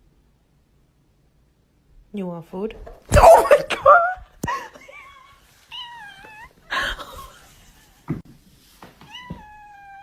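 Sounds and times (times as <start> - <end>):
pet animal crying: 5.0 - 7.2, 9.1 - 10.0.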